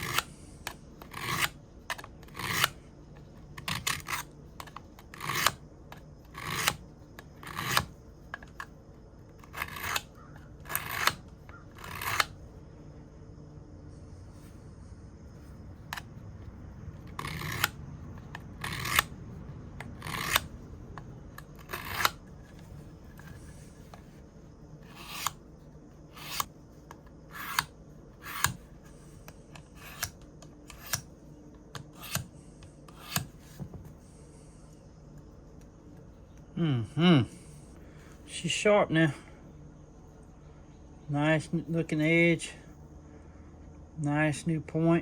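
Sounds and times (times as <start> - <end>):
knife blade on sharpener: 0.0 - 2.8, 3.6 - 5.6, 6.3 - 6.8, 7.4 - 7.9, 9.4 - 12.4, 17.1 - 17.8, 18.6 - 19.1, 20.0 - 20.5, 21.4 - 22.2, 24.9 - 25.4, 26.1 - 26.5, 27.3 - 28.6, 29.5 - 31.1, 31.8 - 32.3, 32.9 - 33.3.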